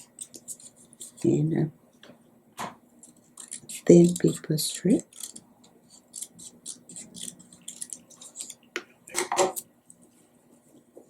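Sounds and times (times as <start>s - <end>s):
scissors snipping paper: 0.0s - 1.3s, 3.1s - 8.6s.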